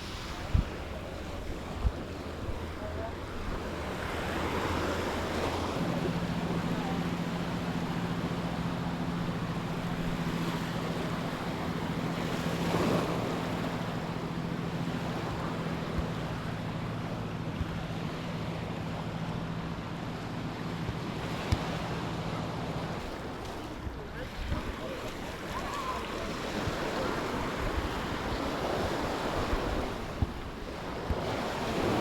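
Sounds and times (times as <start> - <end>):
wind noise on microphone: 0.0 - 2.8, 25.6 - 32.0
low motor hum: 0.0 - 32.0
sea waves washing on beach: 0.0 - 32.0.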